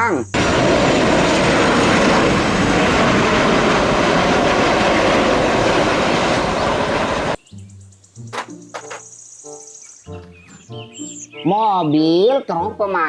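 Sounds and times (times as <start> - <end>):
aircraft engine noise: 0.3 - 7.4, 8.3 - 9.2.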